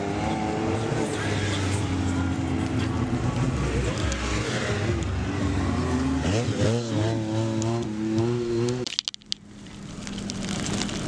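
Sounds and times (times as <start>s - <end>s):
vehicle engine revving: 0.0s - 8.9s.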